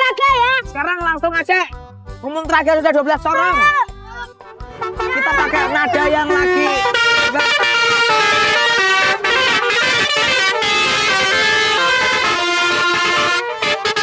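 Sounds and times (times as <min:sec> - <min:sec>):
musical vehicle horn playing tune: 0:04.4 - 0:14.0.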